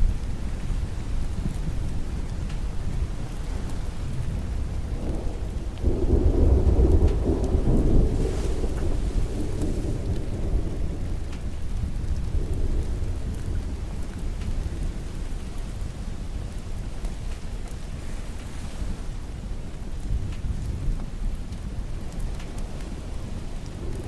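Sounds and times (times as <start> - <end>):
thunder rolling: 0.0 - 16.0, 22.4 - 24.0
steady rain: 0.0 - 24.0.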